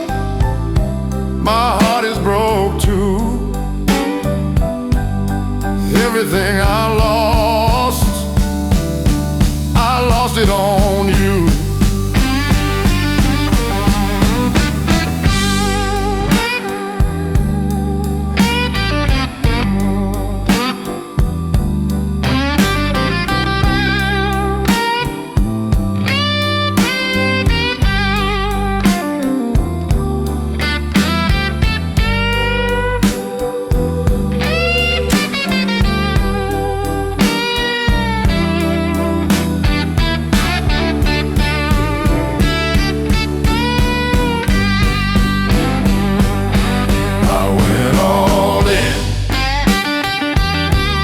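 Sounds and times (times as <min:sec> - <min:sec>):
bass: 0:00.0 - 0:51.0
electric guitar lead: 0:00.0 - 0:51.0
steady drum beat: 0:06.0 - 0:19.9, 0:24.7 - 0:26.0, 0:33.0 - 0:34.4, 0:35.1 - 0:38.7, 0:39.3 - 0:51.0.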